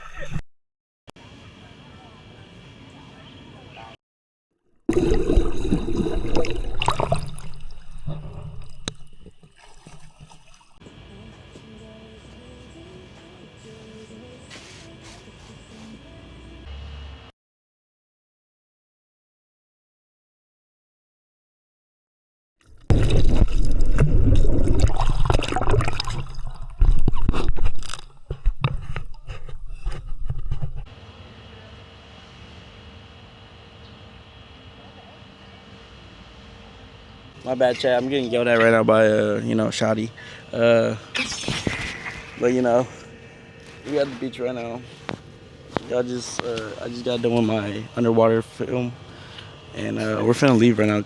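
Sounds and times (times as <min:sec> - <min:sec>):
water splashing and gurgling: 0:04.9 - 0:10.8, 0:22.7 - 0:27.8.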